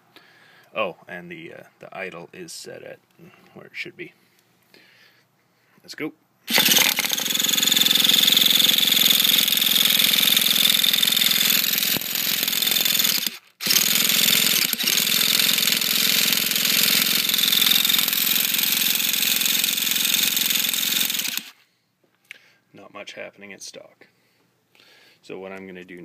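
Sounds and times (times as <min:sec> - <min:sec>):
engine starter whirring rattle: 0:06.5 - 0:21.6.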